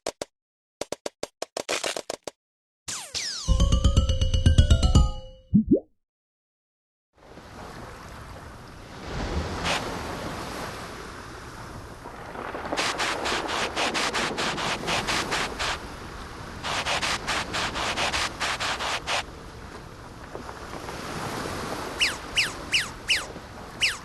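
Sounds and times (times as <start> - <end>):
outdoor wind-like hiss: 7.2 - 22.0.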